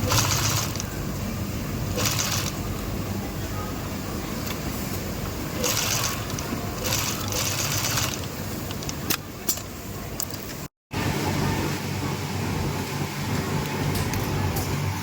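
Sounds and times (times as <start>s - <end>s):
sewing machine motor hum: 0.0s - 0.9s, 1.9s - 2.6s, 5.6s - 8.3s.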